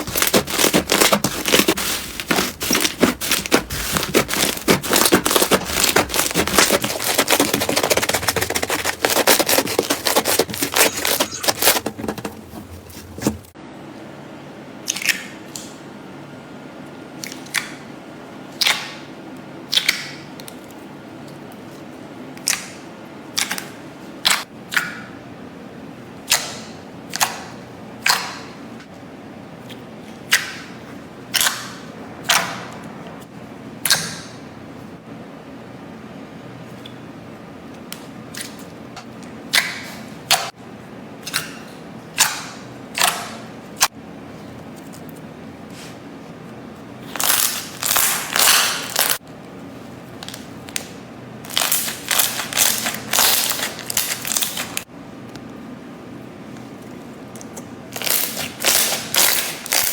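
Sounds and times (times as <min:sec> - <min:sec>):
slime crackling when kneaded: 0:00.0 - 0:11.8.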